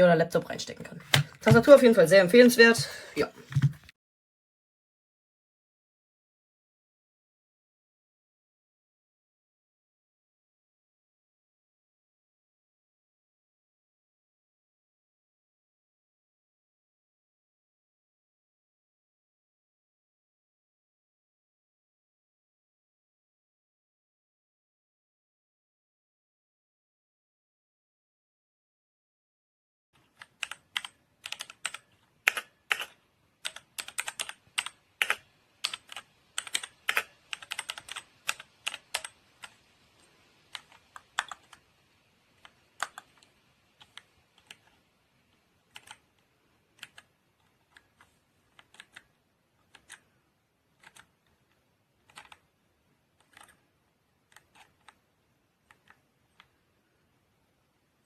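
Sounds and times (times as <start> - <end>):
mechanical keyboard clacking: 30.2 - 39.2.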